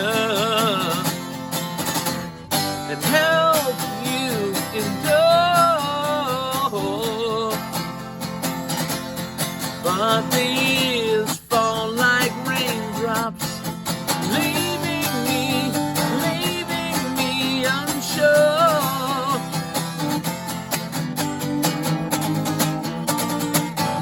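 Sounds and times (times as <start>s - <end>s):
person singing: 0.0s - 1.4s, 2.7s - 8.0s, 9.8s - 20.1s
strummed acoustic guitar: 0.0s - 24.0s.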